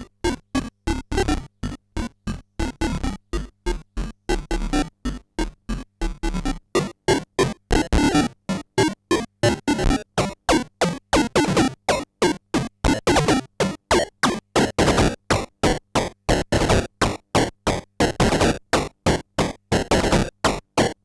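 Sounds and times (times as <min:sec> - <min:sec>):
buzzy synthesizer notes: 0:12.9 - 0:21.0.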